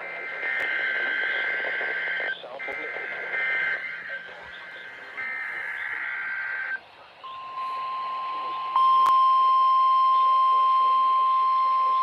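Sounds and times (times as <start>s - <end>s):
radio hiss: 0.0s - 8.7s
digital header tones: 0.0s - 12.0s
steady warning alarm tone: 0.0s - 12.0s.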